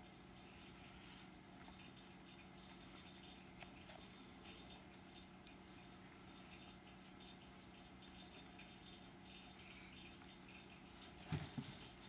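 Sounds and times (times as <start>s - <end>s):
low steady hum: 0.0s - 12.0s
soft ticks and scuffs of cats playing: 9.7s - 12.0s.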